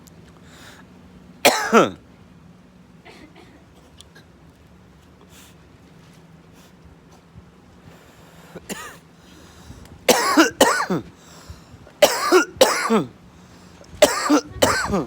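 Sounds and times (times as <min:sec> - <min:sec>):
person coughing: 0:01.5 - 0:02.0, 0:08.7 - 0:09.0, 0:10.1 - 0:11.1, 0:12.0 - 0:13.1, 0:14.0 - 0:15.0.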